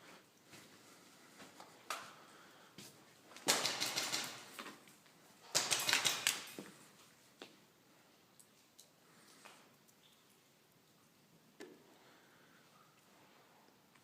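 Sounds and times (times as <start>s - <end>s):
airsoft gun firing: 3.5s - 4.5s, 5.5s - 6.5s.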